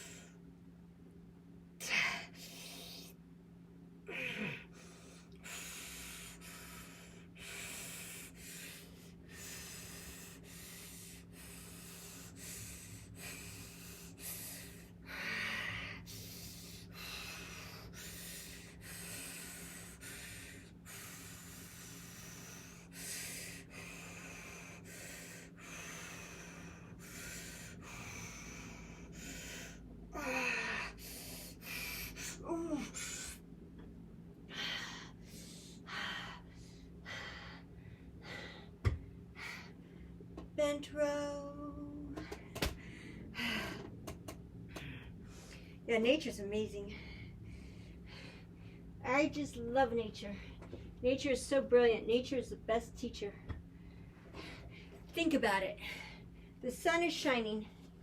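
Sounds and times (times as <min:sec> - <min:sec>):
woman breathing hard: 0:00.0 - 0:00.4, 0:04.1 - 0:33.4, 0:34.4 - 0:40.2, 0:42.1 - 0:45.8, 0:46.9 - 0:49.0, 0:53.5 - 0:55.1
steady low hum: 0:00.0 - 0:58.0
woman grunting: 0:01.8 - 0:02.3, 0:04.1 - 0:04.7, 0:30.2 - 0:31.0, 0:32.2 - 0:33.3.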